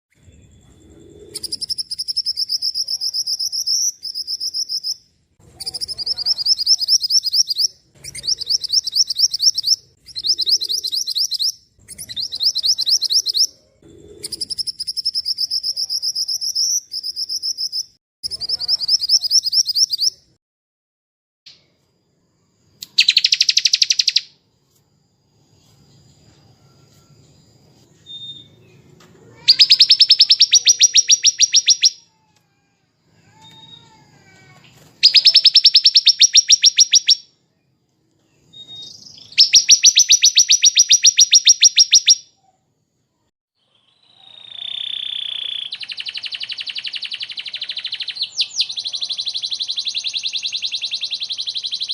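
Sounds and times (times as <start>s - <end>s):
songbird trilling: 5.6s - 20.2s, 22.8s - 24.3s, 29.4s - 32.0s, 35.0s - 37.2s, 38.5s - 42.2s, 43.8s - 51.9s.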